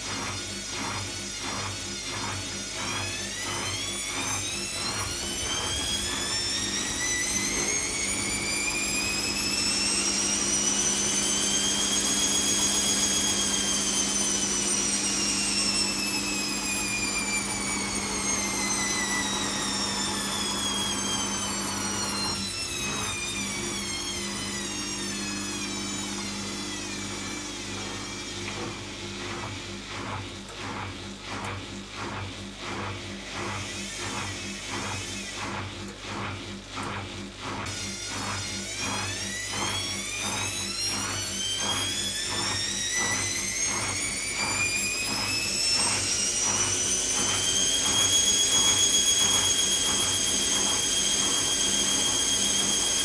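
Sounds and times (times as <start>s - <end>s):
washing machine motor whining: 0.0s - 53.0s
rhythmic machine pulses: 4.4s - 10.3s.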